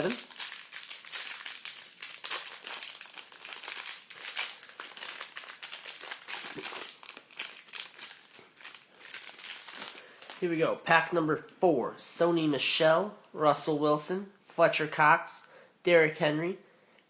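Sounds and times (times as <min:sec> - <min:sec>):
crinkly wrapper being torn open: 0:00.0 - 0:10.4.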